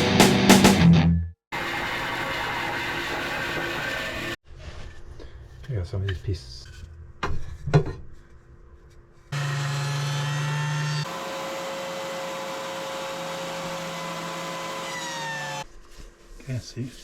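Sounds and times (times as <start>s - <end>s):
planer motor whine: 9.4s - 15.6s.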